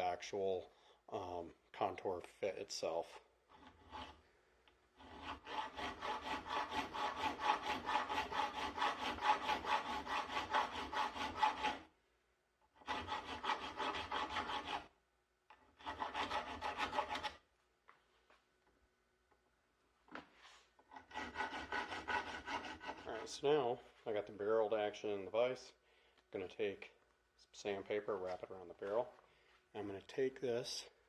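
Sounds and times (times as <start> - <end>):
file rasping on steel: 3.5 - 4.2, 5.0 - 11.9, 12.8 - 14.9, 15.5 - 17.4, 20.8 - 23.5.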